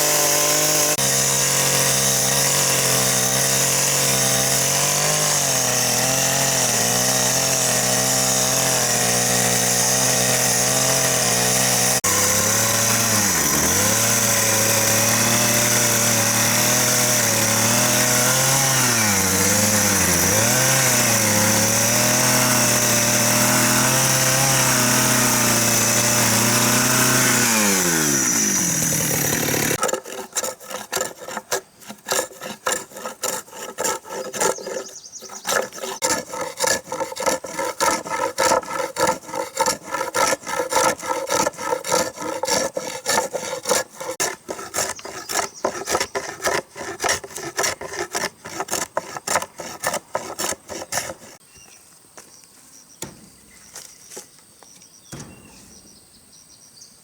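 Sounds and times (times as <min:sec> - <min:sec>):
hand saw cutting wood: 0:00.0 - 0:51.4
power tool winding down: 0:05.3 - 0:29.8.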